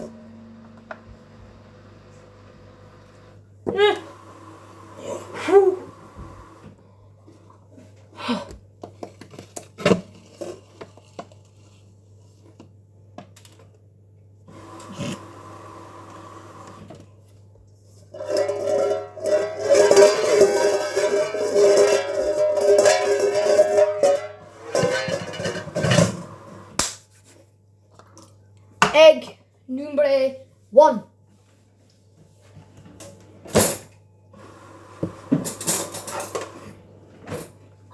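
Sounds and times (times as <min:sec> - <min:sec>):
plucked-string music: 0:00.0 - 0:01.8.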